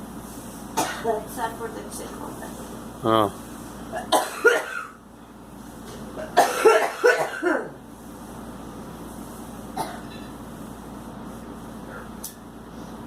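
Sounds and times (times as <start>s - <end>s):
girl coughing: 0.8s - 1.2s, 4.0s - 5.0s, 6.2s - 7.8s, 9.8s - 10.3s.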